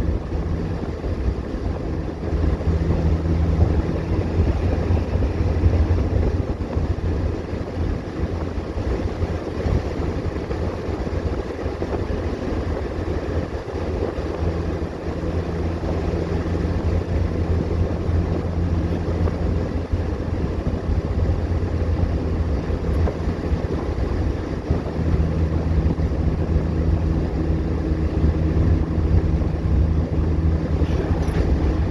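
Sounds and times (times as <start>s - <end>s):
car engine running: 0.0s - 31.9s
wind and road noise: 0.0s - 31.9s.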